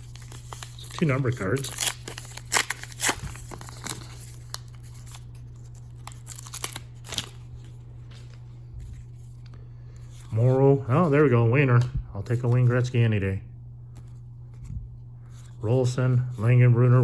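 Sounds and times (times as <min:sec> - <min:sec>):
foil wrapper tearing and crinkling: 0:00.0 - 0:07.6
steady low hum: 0:00.0 - 0:17.0.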